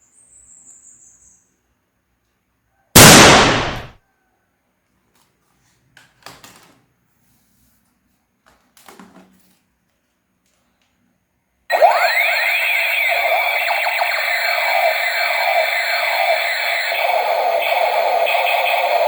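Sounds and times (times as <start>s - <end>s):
electronic sweeping tones: 3.0s - 3.9s, 11.7s - 19.0s
loud bang: 3.0s - 3.9s.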